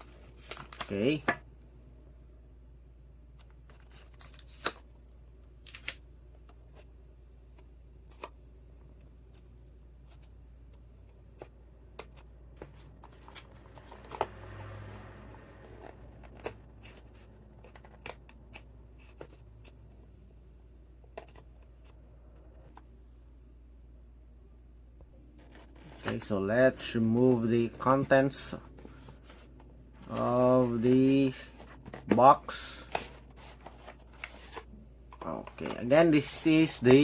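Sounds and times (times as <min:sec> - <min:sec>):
packaging rustling scrape: 0:28.8 - 0:37.0.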